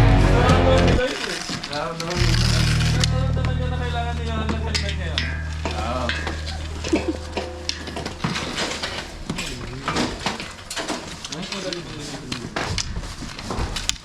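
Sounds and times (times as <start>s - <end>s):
background music: 0.0s - 1.0s.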